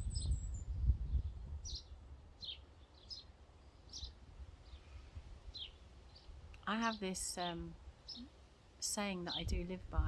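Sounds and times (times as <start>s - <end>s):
small bird chirping: 0.0s - 3.3s, 8.0s - 8.3s.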